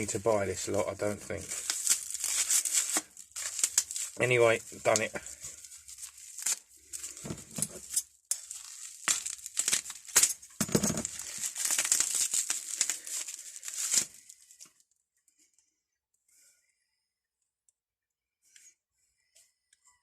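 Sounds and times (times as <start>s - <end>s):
packaging crinkling and tearing: 0.0s - 14.8s.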